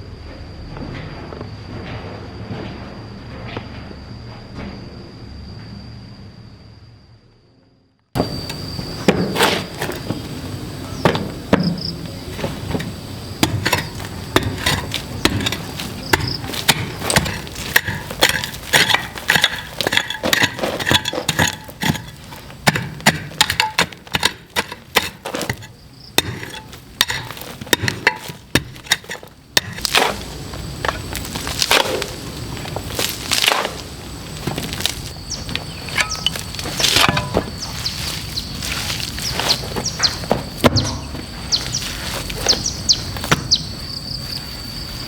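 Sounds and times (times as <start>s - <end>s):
tool striking wood: 11.0s - 30.2s.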